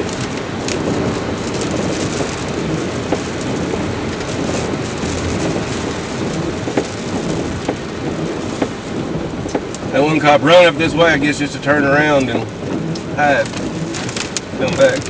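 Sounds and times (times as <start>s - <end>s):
wind and rain rushing: 0.0s - 15.0s.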